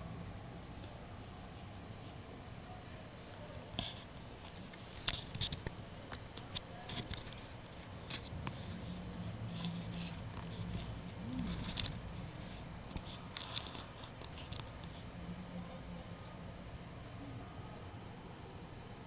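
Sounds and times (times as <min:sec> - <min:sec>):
faint low horn-like tone: 0:08.3 - 0:12.9, 0:14.9 - 0:17.9.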